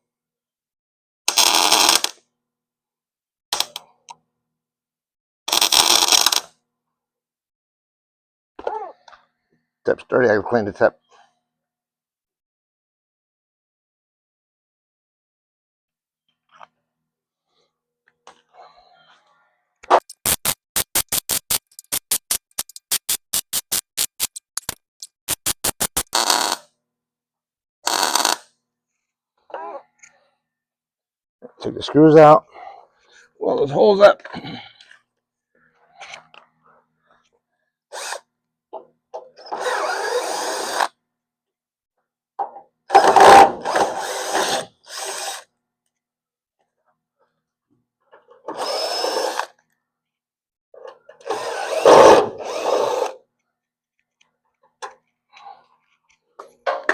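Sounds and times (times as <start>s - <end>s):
welder crackling bursts: 20.0s - 26.2s.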